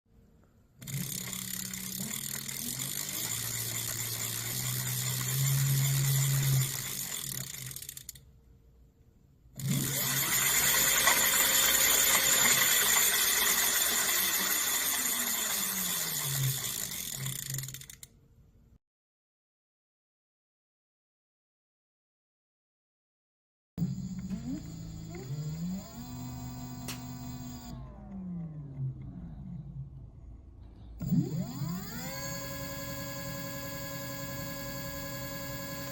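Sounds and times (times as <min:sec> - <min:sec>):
electric bicycle motor whirring: 0:00.8 - 0:08.2, 0:09.6 - 0:18.1, 0:23.8 - 0:28.3, 0:31.0 - 0:35.9.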